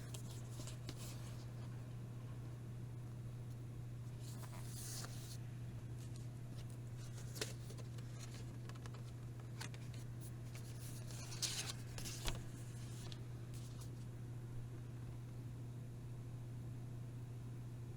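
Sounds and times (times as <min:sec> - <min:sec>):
steady low hum: 0:00.0 - 0:17.9
packaging rustling: 0:06.0 - 0:13.7.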